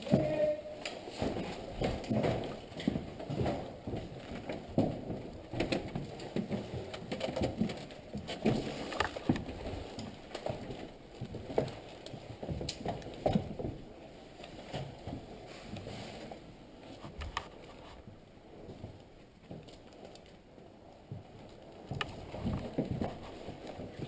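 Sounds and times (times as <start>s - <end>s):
irregular knocks and clicks: 0.0s - 13.8s.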